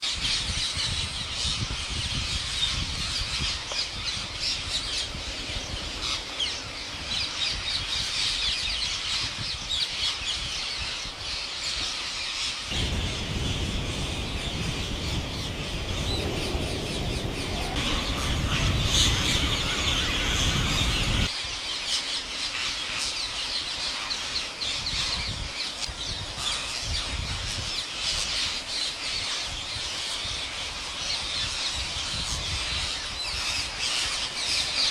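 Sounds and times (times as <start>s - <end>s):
low rumble: 12.7s - 21.3s
parrots squawking and chattering: 12.7s - 21.3s.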